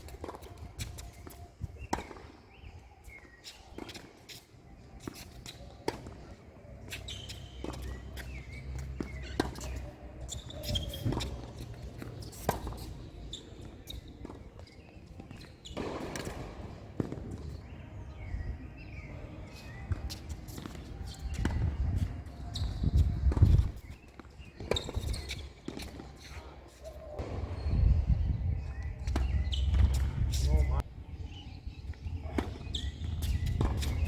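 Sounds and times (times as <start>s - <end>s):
footsteps on tennis court: 0.0s - 30.8s, 31.7s - 34.0s
tennis ball bouncing: 6.9s - 19.1s, 29.0s - 30.1s.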